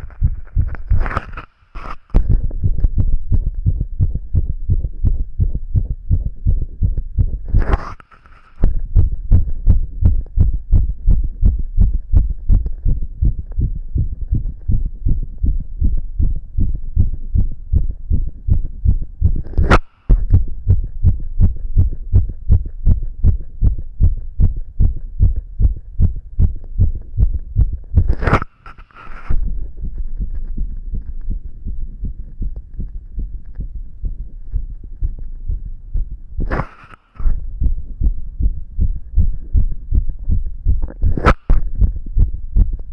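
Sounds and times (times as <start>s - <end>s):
fast heartbeat thumps: 0.0s - 7.8s, 8.6s - 28.4s, 29.2s - 36.6s, 37.2s - 42.9s
sharp click: 19.4s - 20.3s, 28.1s - 29.4s, 40.9s - 41.7s.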